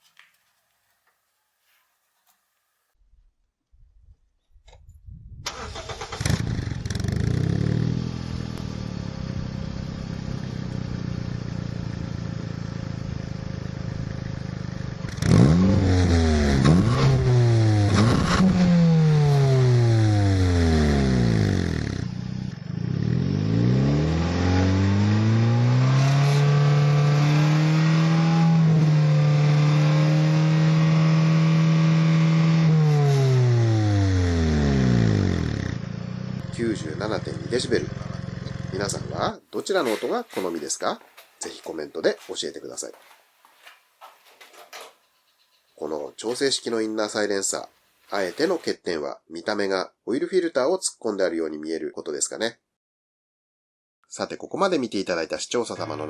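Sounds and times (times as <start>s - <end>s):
car engine starting: 5.4s - 40.6s
car engine idling and revving: 5.7s - 39.3s.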